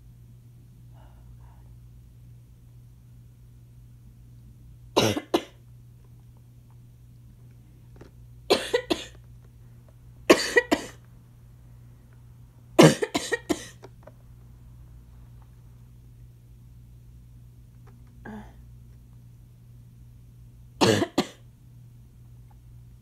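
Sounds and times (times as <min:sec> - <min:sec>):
person coughing: 0:05.0 - 0:05.6, 0:08.5 - 0:09.2, 0:10.3 - 0:11.0, 0:12.8 - 0:13.9, 0:20.8 - 0:21.4.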